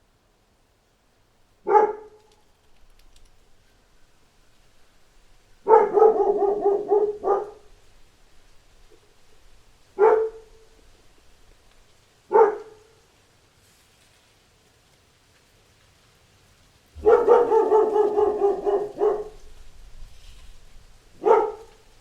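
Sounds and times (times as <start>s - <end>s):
dog barking: 1.6s - 2.2s, 5.6s - 7.8s, 10.0s - 10.8s, 12.3s - 13.0s, 17.0s - 19.6s, 21.1s - 22.0s.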